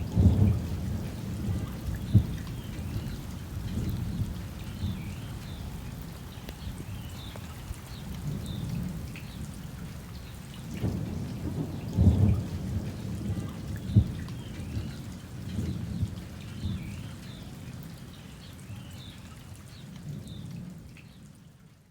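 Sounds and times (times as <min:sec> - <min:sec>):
low rolling thunder: 0:00.0 - 0:05.0, 0:10.8 - 0:16.8
rain falling: 0:00.0 - 0:21.9.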